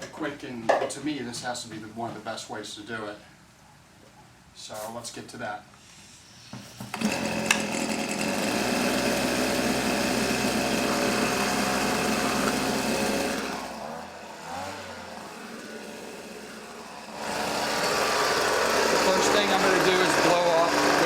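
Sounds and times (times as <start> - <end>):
leaf blower running: 6.9 - 21.0.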